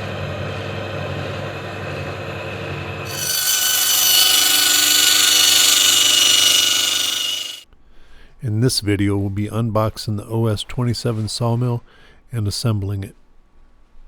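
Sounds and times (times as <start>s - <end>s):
saw blade cutting wood: 3.1s - 7.6s
sawmill engine running: 3.1s - 7.6s.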